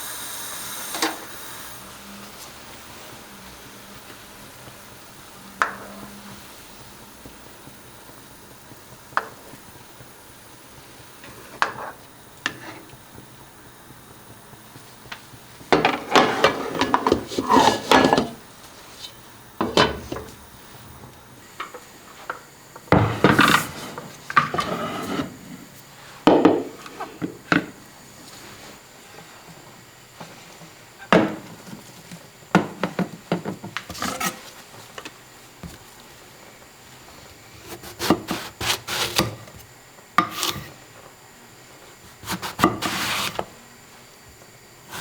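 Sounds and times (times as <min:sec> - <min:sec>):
utensils knocking on pots: 0:15.6 - 0:20.8
kitchenware clinking and clattering: 0:15.7 - 0:18.5, 0:19.6 - 0:20.4.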